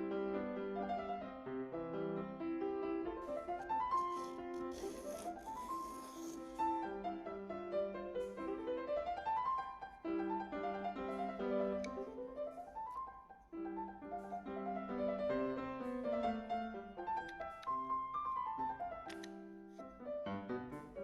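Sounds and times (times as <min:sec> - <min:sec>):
classical piano music: 0:00.0 - 0:21.0.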